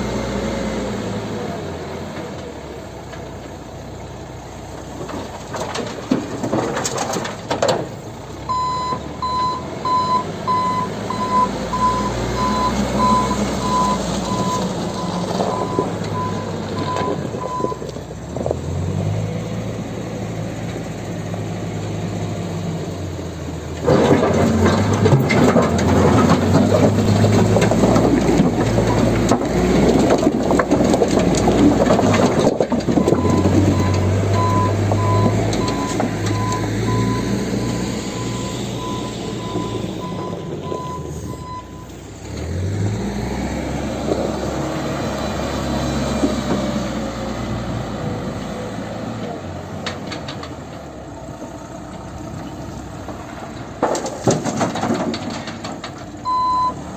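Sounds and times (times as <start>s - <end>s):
diesel engine working under load: 0.0s - 56.9s
reversing alarm beeping: 8.5s - 17.8s, 33.0s - 42.0s, 56.2s - 56.8s.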